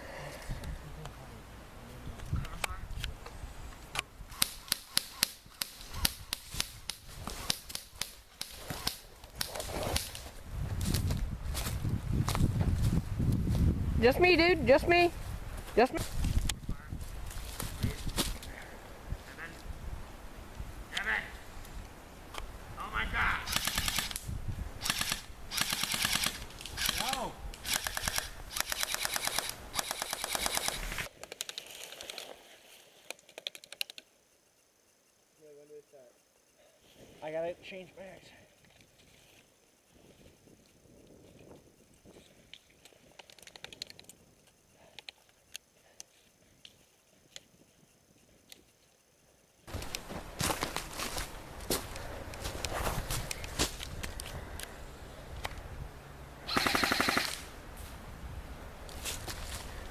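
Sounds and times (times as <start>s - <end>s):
airsoft gun shots: 4.3s - 10.1s, 56.5s - 57.5s
airsoft gun firing full auto: 23.5s - 24.2s, 24.8s - 31.1s, 56.5s - 57.5s
faint scattered clicks: 33.0s - 36.6s, 40.5s - 50.1s, 51.9s - 54.8s.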